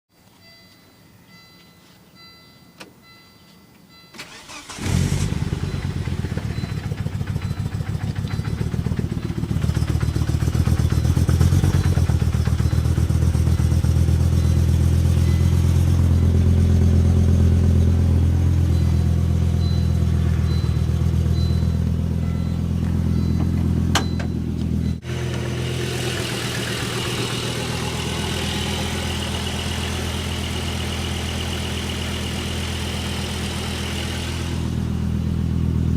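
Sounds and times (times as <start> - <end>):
car engine cranking and idling: 4.1 - 35.9
chime tones: 14.3 - 16.6, 18.6 - 25.1.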